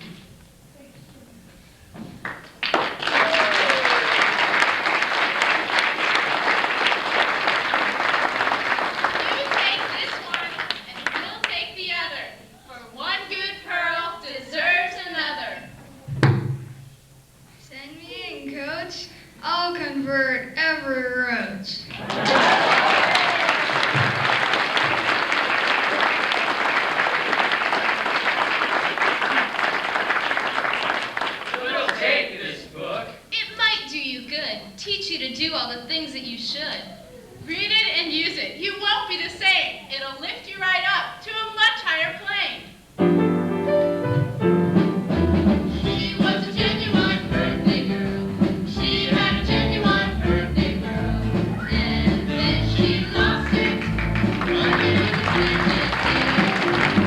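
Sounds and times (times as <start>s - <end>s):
audience applauding: 2.2s - 11.6s, 21.9s - 32.3s, 52.8s - 57.0s
upbeat song with bass and drums: 43.0s - 57.0s
person singing: 45.8s - 56.8s.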